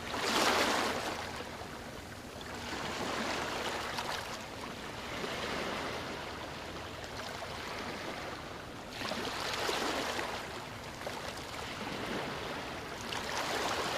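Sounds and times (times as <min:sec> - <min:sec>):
waves washing onto beach: 0:02.6 - 0:13.9.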